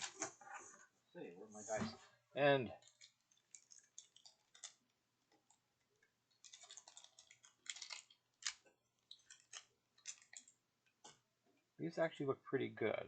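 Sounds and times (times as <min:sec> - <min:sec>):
plastic packaging crinkling: 0:02.8 - 0:10.6.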